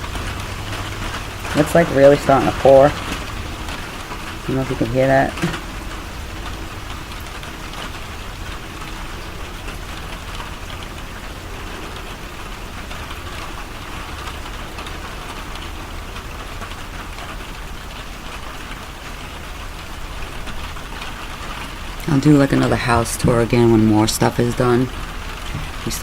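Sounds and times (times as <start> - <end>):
heavy rain pouring: 0.0 - 26.0.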